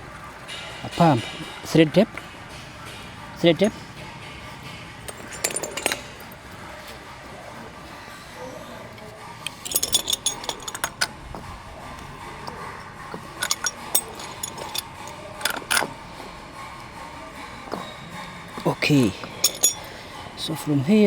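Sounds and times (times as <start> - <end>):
metallic clinks of fittings and tools: 5.1 - 6.4, 9.4 - 11.1, 13.3 - 15.9, 18.8 - 20.0.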